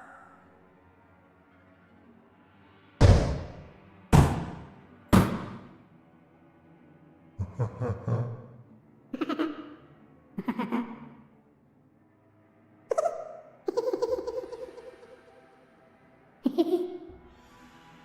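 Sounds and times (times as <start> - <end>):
eerie ghost laughs: 7.4 - 11.3, 12.9 - 15.4, 16.4 - 17.2.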